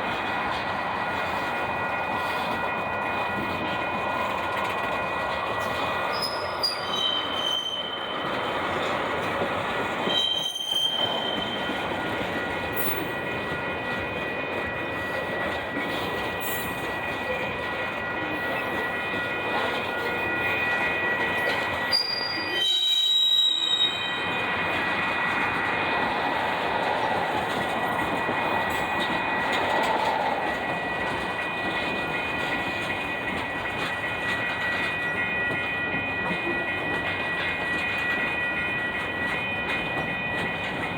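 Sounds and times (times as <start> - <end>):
high-pitched wheel squeal: 6.1 - 8.8, 10.0 - 11.9, 21.4 - 24.7.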